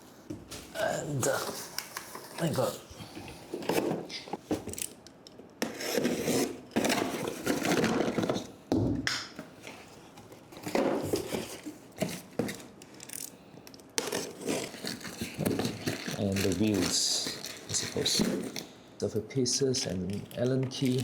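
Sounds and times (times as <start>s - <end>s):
parts rubbing and scraping: 14.0s - 18.7s.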